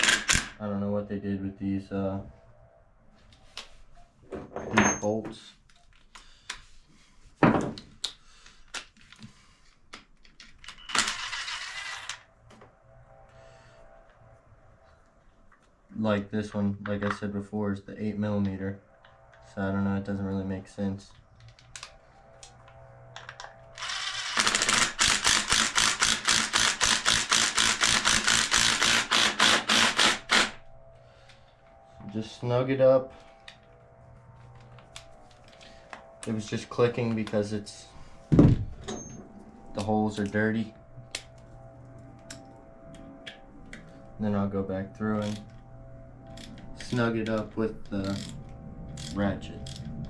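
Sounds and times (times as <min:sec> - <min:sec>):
hand ratchet clicking rapidly: 0:23.8 - 0:30.6.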